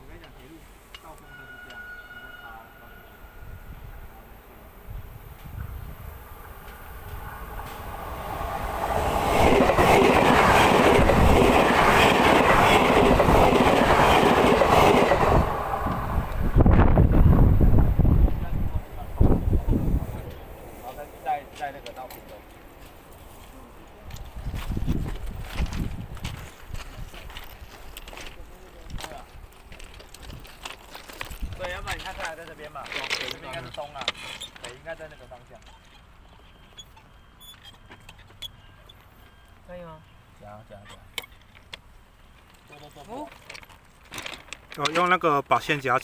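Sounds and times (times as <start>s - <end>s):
train passing on rails: 0.0s - 33.3s
footsteps on track ballast: 22.3s - 32.4s.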